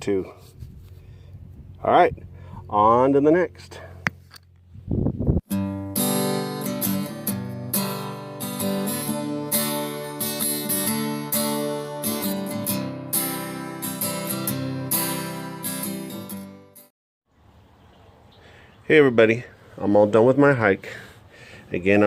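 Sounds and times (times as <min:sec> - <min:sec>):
acoustic guitar strummed and plucked: 0:05.5 - 0:16.9.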